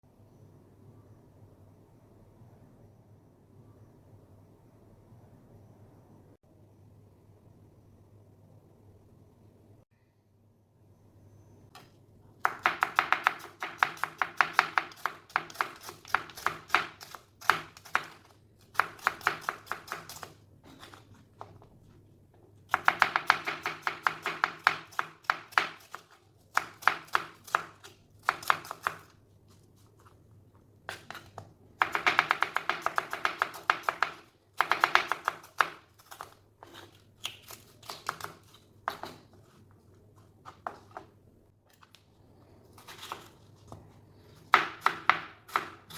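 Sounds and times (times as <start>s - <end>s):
knife chopping on cutting board: 12.4s - 21.6s, 22.7s - 29.1s, 30.9s - 39.4s, 44.5s - 45.9s.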